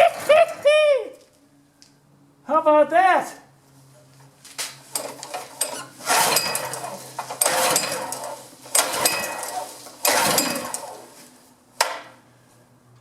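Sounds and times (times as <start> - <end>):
engine recoil starter cranking: 4.9 - 11.2.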